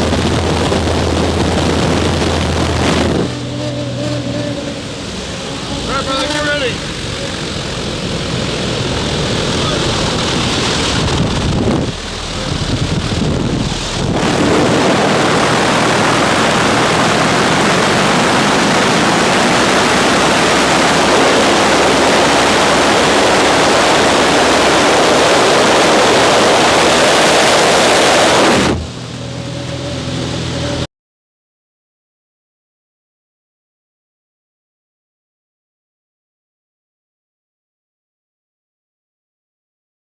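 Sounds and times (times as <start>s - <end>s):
wind rushing over microphone: 0.0s - 30.9s.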